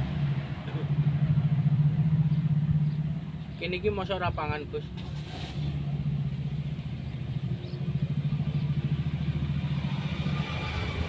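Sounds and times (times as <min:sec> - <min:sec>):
vehicle engine humming: 0:00.0 - 0:11.0.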